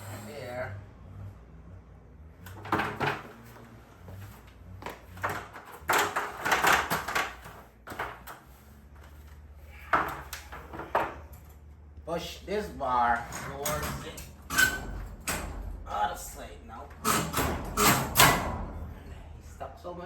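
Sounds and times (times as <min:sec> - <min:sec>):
steady low hum: 0:10.4 - 0:20.0
metal clunks and scraping: 0:13.2 - 0:16.0, 0:16.9 - 0:19.6.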